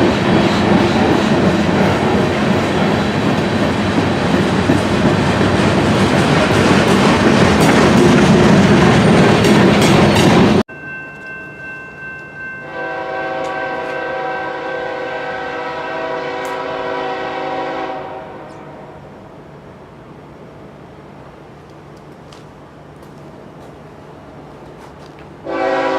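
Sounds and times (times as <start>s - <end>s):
train passing with wheel noise: 0.0s - 25.9s
locomotive horn chord: 12.6s - 19.0s, 25.4s - 25.9s.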